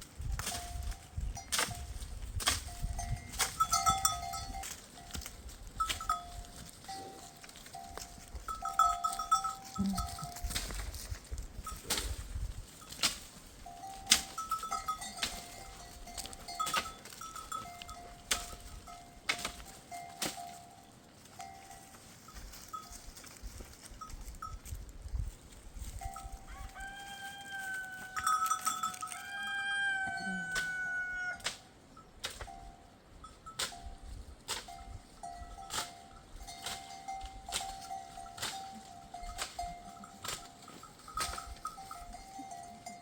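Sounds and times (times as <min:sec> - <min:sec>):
livestock bells clinking: 0:00.1 - 0:25.0, 0:25.8 - 0:43.0
long drawn-out animal call: 0:29.3 - 0:31.5.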